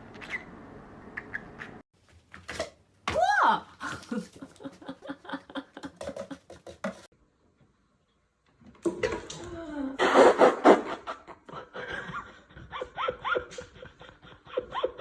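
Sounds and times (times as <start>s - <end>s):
person laughing: 3.7s - 6.6s.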